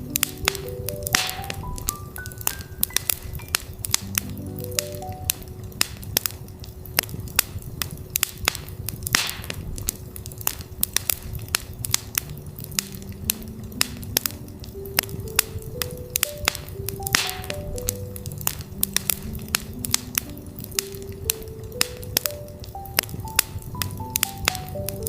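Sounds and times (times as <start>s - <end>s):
soft pitched notes stepping upward: 0.0s - 6.6s, 12.6s - 25.0s
campfire crackling and popping: 0.0s - 25.0s
fire hissing flare: 0.0s - 25.0s.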